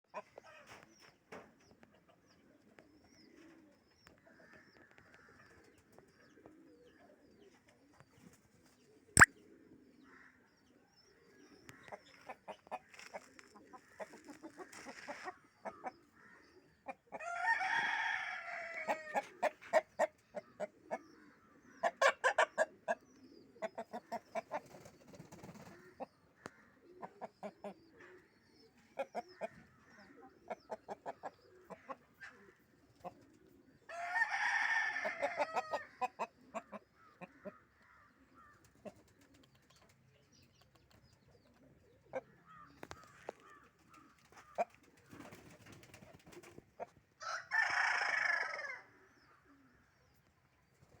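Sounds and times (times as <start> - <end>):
rooster crowing: 33.9 - 35.8, 47.2 - 48.9.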